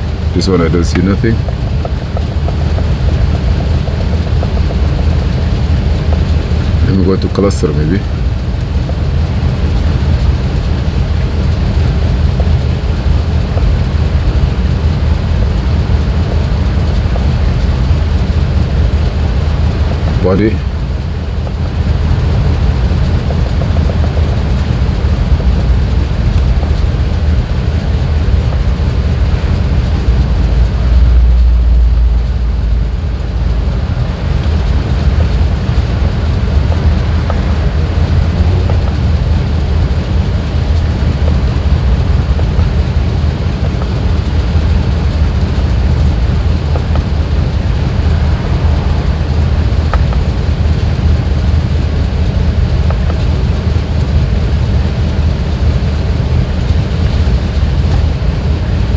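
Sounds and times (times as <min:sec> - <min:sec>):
engine idling with low drone: 0:00.0 - 0:58.9.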